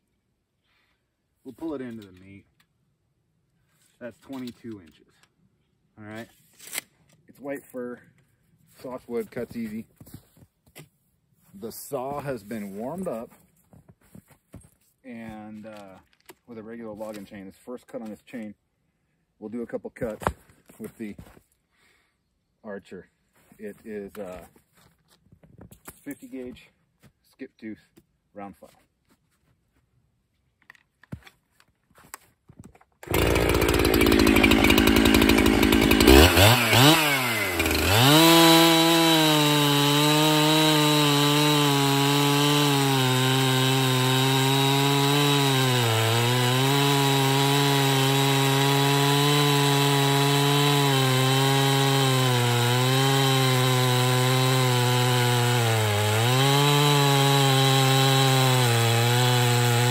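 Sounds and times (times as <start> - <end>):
chainsaw revving and cutting log: 12.2 - 13.3, 33.0 - 59.9.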